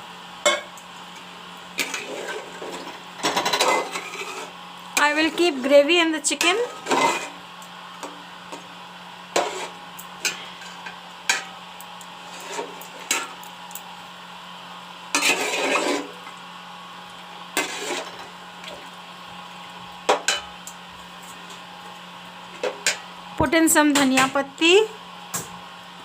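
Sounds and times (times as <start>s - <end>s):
spoon scraping cooking pot: 15.2s - 16.1s, 17.6s - 18.2s.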